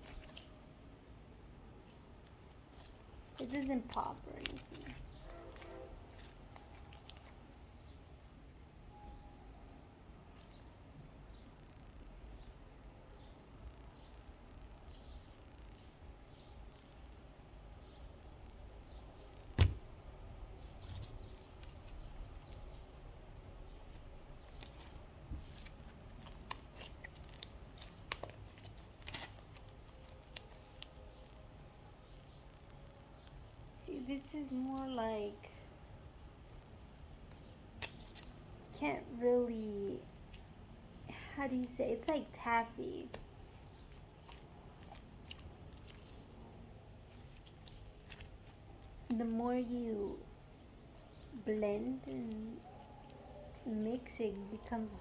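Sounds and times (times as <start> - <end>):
low room hum: 0.0 - 55.0
sticky slime clicks and squelches: 2.2 - 7.4, 23.9 - 31.4, 43.0 - 46.4, 47.1 - 49.4.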